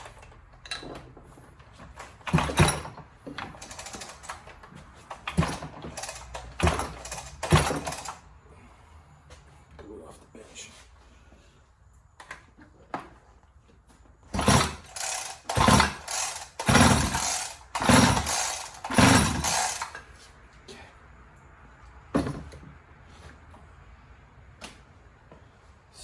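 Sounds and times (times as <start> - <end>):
recoil starter rope pulls: 1.8 - 8.2, 14.3 - 20.0.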